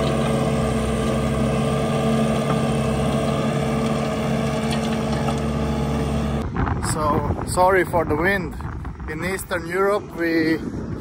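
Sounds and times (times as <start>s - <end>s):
loader engine running: 0.0s - 7.4s.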